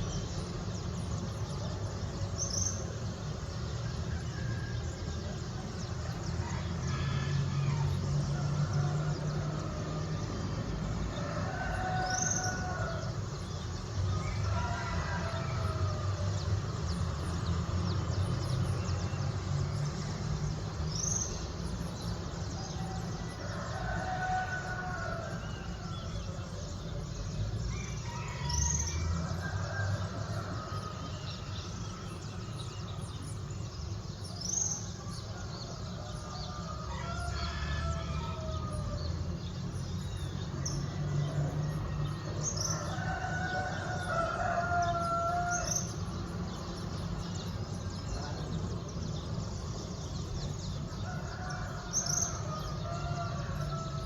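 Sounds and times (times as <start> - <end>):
city traffic rumble: 0.0 - 54.0
rooster crowing: 6.0 - 17.0, 21.9 - 33.2, 34.4 - 54.0.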